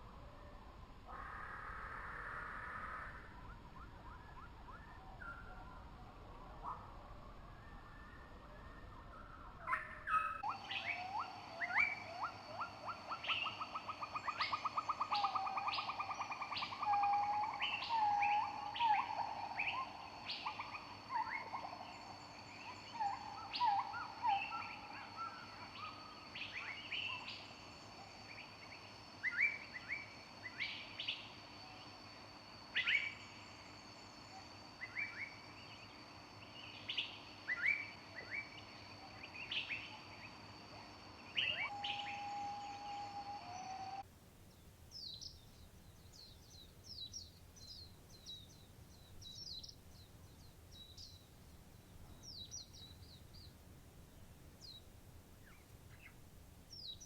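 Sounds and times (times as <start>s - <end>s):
songbirds chirping: 0.0s - 57.0s
bird trill: 9.1s - 27.3s, 41.3s - 44.0s
low whistled bird notes: 41.3s - 44.0s.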